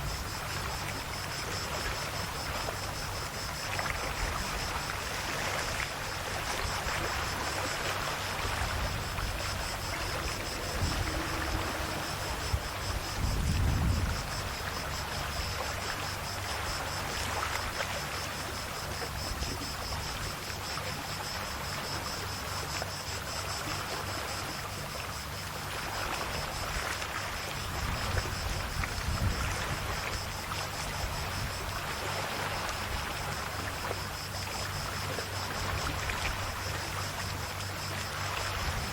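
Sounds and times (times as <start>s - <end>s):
sea waves washing on shore: 0.0s - 38.9s
faint high-pitched tone: 9.7s - 13.0s.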